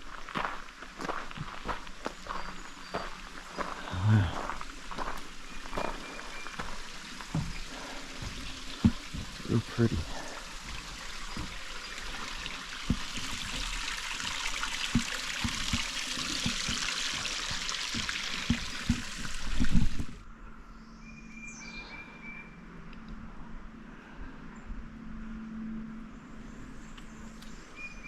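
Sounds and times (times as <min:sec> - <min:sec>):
water trickling and splashing: 0:00.0 - 0:20.2
soft thumps: 0:07.3 - 0:09.4, 0:10.6 - 0:20.2
bird chirping call: 0:27.4 - 0:28.0.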